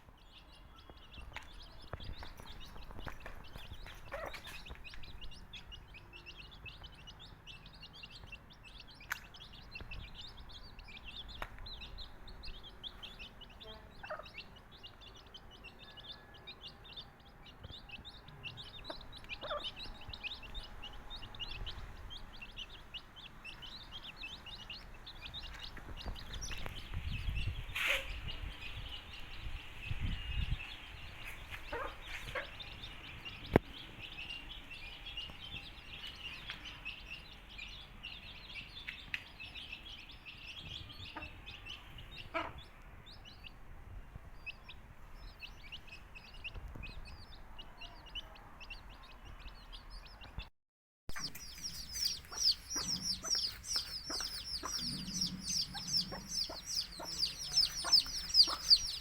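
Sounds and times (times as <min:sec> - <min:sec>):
chicks peeping: 0:00.1 - 0:43.6, 0:44.2 - 0:50.5, 0:51.1 - 0:59.0
hen clucking: 0:18.8 - 0:20.6, 0:51.1 - 0:59.0.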